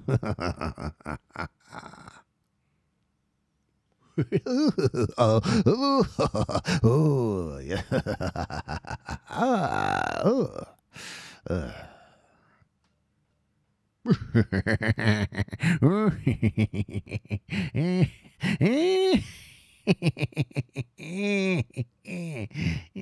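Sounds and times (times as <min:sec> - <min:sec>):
man laughing evilly: 0:00.0 - 0:02.2, 0:04.2 - 0:10.7, 0:11.4 - 0:12.0, 0:14.1 - 0:23.0.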